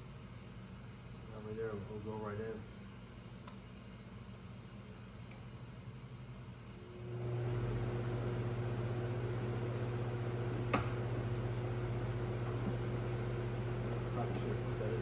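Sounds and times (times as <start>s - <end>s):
steady motor hum: 6.7s - 15.0s.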